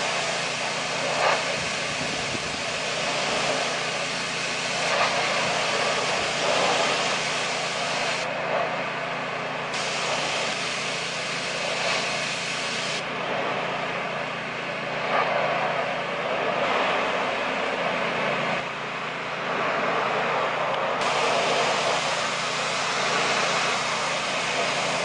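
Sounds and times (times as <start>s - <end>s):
pressure washer spray hiss: 0.0s - 8.3s, 9.7s - 13.0s, 21.0s - 25.0s
motor hum: 0.0s - 25.0s.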